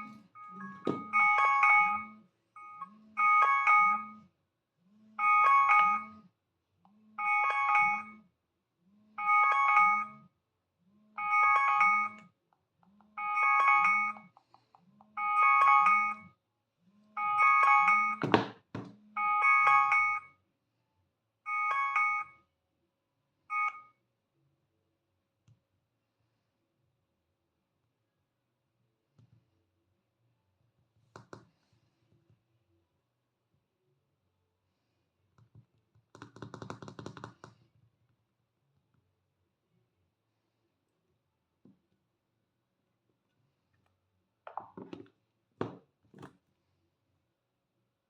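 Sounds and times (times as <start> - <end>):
phone alarm chiming: 0.0 - 4.3, 5.2 - 6.2, 7.2 - 8.2, 9.2 - 10.2, 11.2 - 12.3, 13.2 - 14.3, 15.2 - 16.3, 17.2 - 18.4, 19.2 - 20.4, 21.5 - 22.4.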